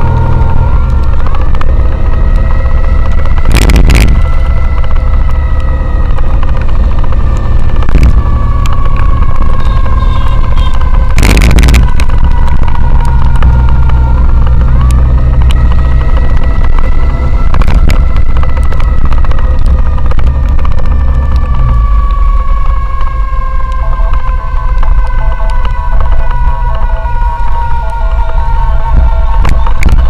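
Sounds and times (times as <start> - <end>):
wind rumble on microphone: 0.0 - 30.0.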